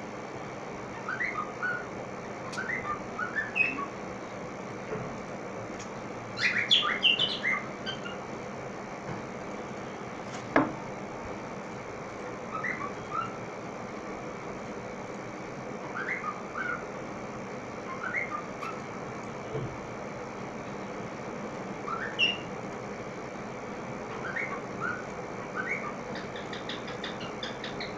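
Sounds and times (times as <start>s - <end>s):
pet bird whistling chirpy notes: 1.0s - 1.8s, 6.4s - 8.2s, 21.9s - 22.5s.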